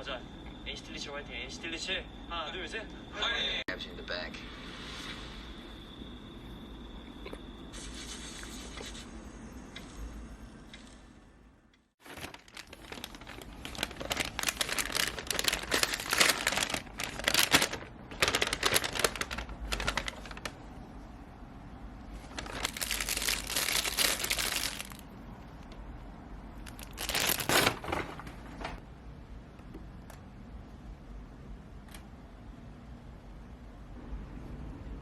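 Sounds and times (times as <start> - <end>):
packaging crinkling and rustling: 12.0 - 20.6, 22.1 - 25.1, 26.6 - 28.8.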